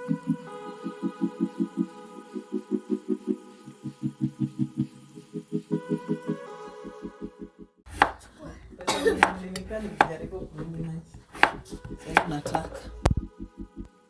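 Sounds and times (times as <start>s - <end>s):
background music with steady pulse: 0.0s - 14.0s
knife chopping on cutting board: 7.9s - 12.9s.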